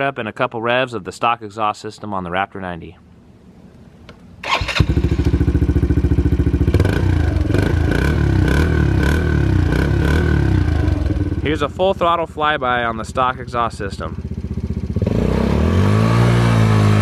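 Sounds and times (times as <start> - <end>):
small engine starting and revving: 4.4 - 11.2, 14.8 - 17.0.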